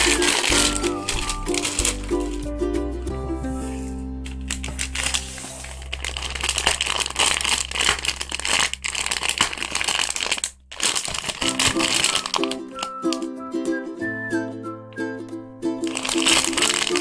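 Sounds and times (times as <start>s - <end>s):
packaging crinkling: 0.0s - 2.5s, 4.2s - 13.2s, 15.8s - 17.0s
background music: 0.0s - 6.3s, 11.4s - 17.0s.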